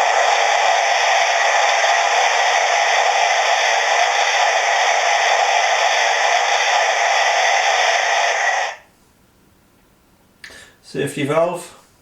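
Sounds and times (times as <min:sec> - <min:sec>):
steam hissing: 0:00.0 - 0:08.9.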